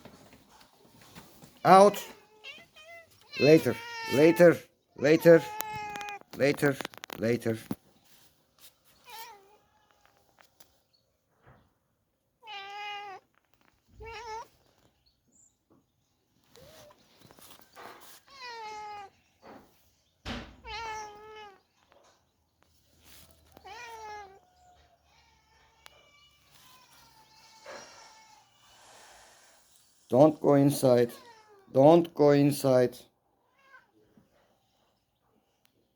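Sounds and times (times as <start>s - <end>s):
cat meowing: 2.0s - 6.3s, 12.4s - 13.3s, 13.9s - 14.6s, 18.1s - 19.2s, 20.6s - 21.7s, 23.3s - 28.6s.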